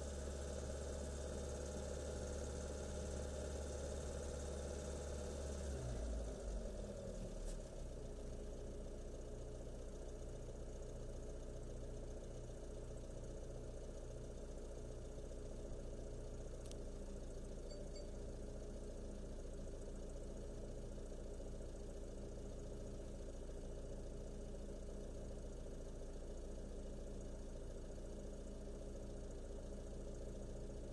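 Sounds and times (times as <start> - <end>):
car engine idling: 0.0 - 30.9
faint click: 16.6 - 16.8.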